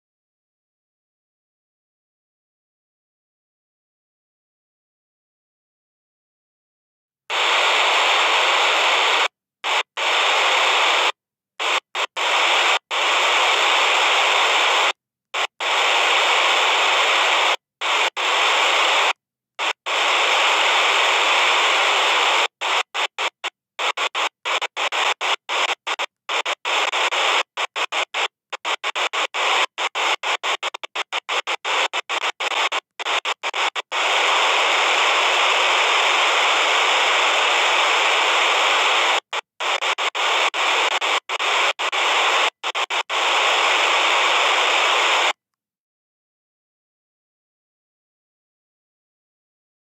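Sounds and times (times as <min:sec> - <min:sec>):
walkie-talkie static hiss: 0:07.3 - 0:45.4.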